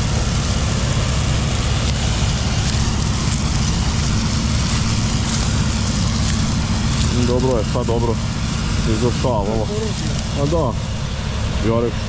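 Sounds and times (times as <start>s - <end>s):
combine harvester running: 0.0s - 12.0s.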